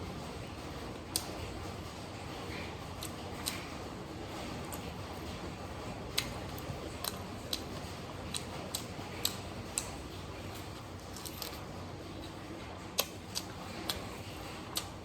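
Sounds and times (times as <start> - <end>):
steady background hum: 0.0 - 15.0
chewing and lip-smacking: 13.0 - 15.0.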